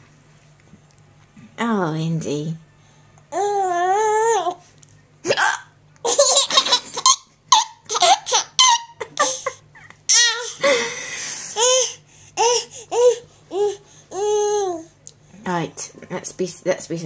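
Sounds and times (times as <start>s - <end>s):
baby laughing: 6.0s - 10.8s.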